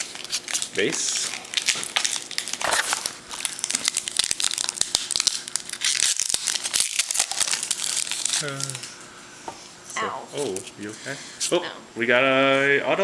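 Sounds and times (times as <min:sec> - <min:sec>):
foil wrapper crinkling and tearing: 0:00.0 - 0:09.0.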